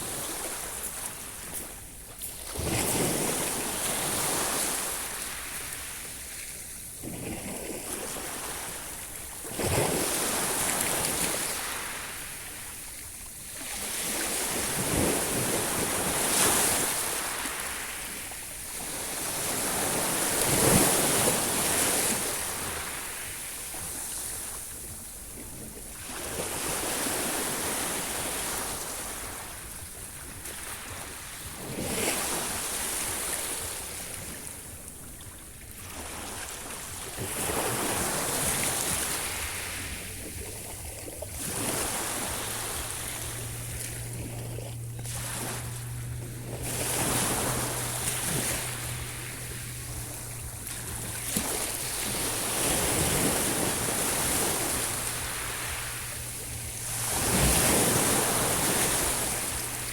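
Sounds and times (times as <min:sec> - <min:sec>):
sea waves breaking: 0:00.0 - 0:59.9
low steady hum: 0:38.2 - 0:59.9.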